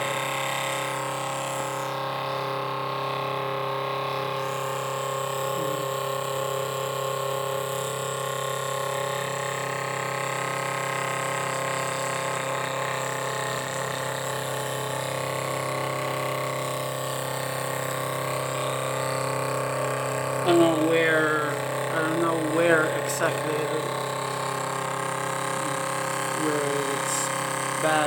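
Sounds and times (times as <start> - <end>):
fan humming with hiss: 7.6 - 28.0.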